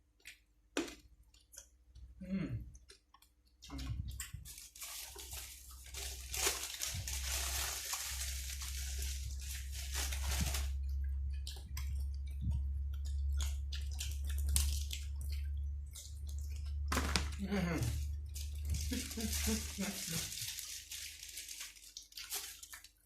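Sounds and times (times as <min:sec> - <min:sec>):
person crunching and chewing food: 0:00.0 - 0:23.0
steady low hum: 0:05.3 - 0:20.6.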